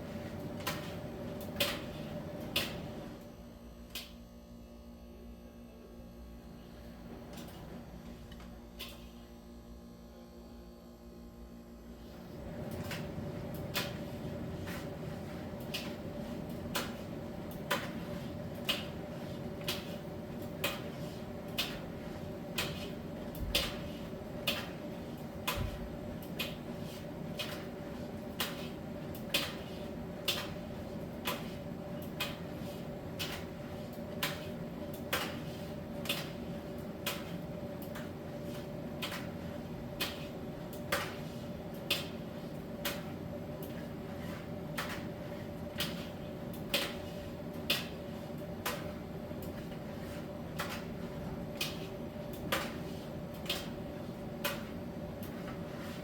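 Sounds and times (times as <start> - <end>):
tumble dryer humming: 0.0 - 10.1, 10.8 - 56.0
dryer drum turning: 12.2 - 56.0.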